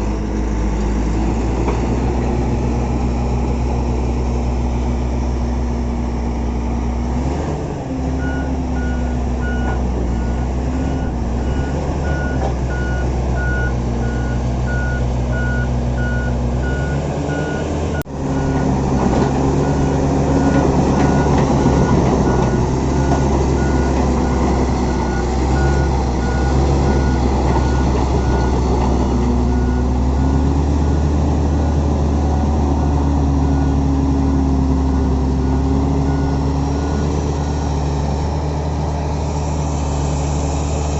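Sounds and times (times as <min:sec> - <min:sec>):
bulldozer diesel engine running: 0:00.0 - 0:40.9
reversing alarm beeping: 0:08.2 - 0:18.8, 0:19.6 - 0:28.6, 0:32.7 - 0:37.8.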